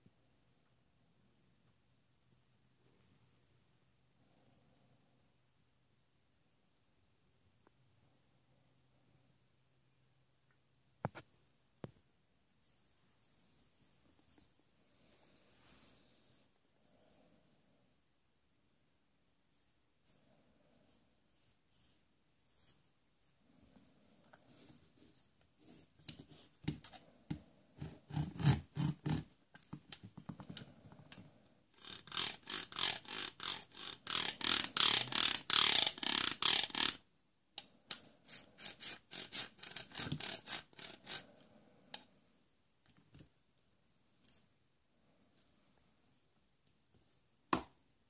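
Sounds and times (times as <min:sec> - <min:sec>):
plastic toy tool scraping: 0:27.8 - 0:31.2, 0:31.8 - 0:37.0, 0:37.9 - 0:42.1.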